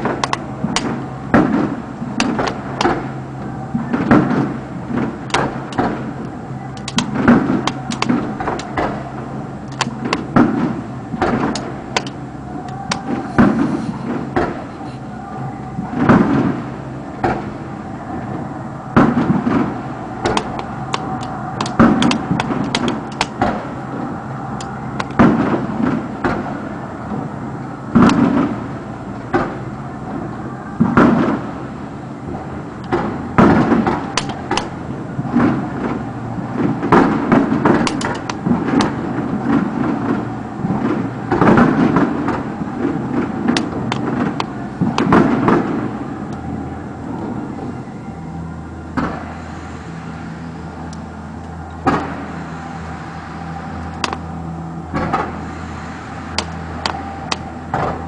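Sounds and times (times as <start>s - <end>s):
fireworks crackling: 0.0s - 15.2s, 19.0s - 47.4s
fireworks booming: 0.0s - 47.7s, 51.6s - 58.0s.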